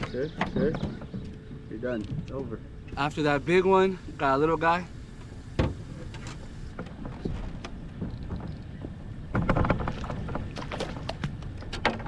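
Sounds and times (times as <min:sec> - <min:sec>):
light clicks and knocks in boat: 0:00.0 - 0:03.2, 0:05.2 - 0:12.0
rustling and splashing: 0:05.0 - 0:12.0.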